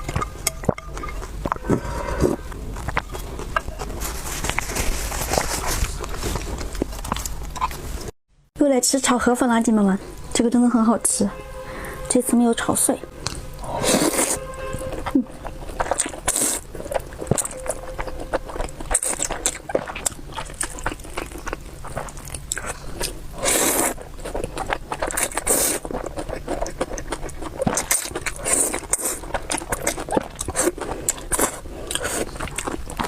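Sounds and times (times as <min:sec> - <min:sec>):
chewing with mouth clicks: 0:00.0 - 0:08.1, 0:13.2 - 0:33.0
wet slurping of noodles: 0:23.3 - 0:24.0, 0:25.2 - 0:25.9.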